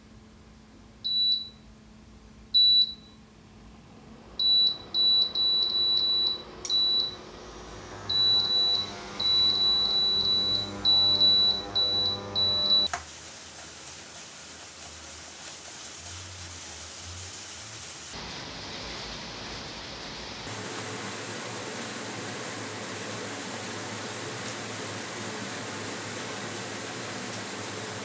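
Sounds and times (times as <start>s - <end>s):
control panel beeping: 8.0s - 12.9s.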